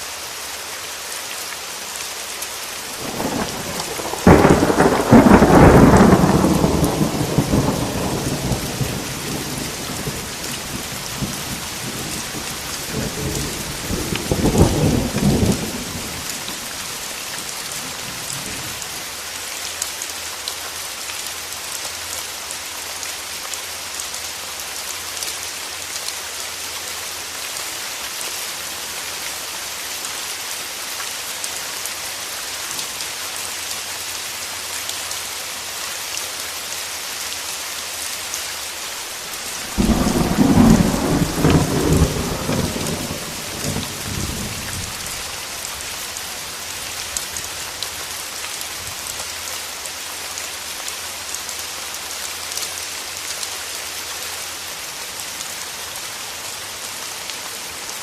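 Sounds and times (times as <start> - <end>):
heavy rain: 0.0 - 58.0
thunder rumbling: 3.0 - 17.0, 39.4 - 45.4.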